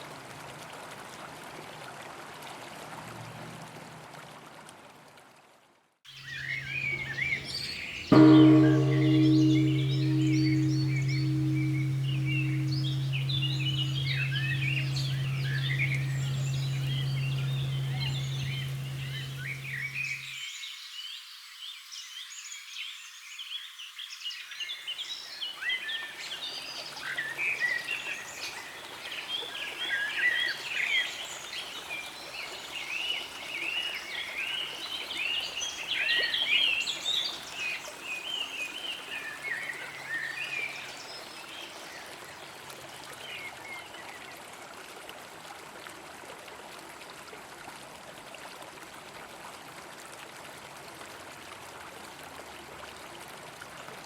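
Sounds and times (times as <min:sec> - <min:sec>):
bell humming: 0:06.3 - 0:20.3.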